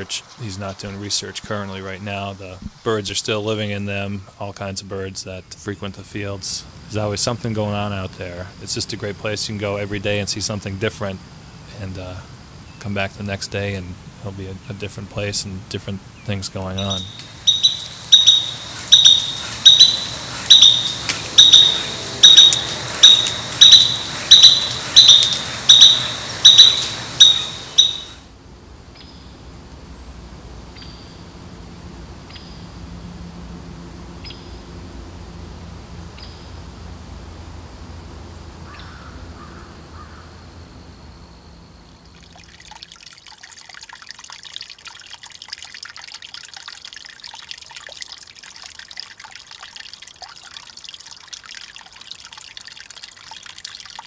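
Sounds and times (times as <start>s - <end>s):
water trickling: 6.6s - 28.4s, 41.8s - 54.0s
faint high bird calls: 16.2s - 28.3s, 38.7s - 42.8s
bird calling high notes: 16.6s - 28.3s
low hum: 16.9s - 42.9s.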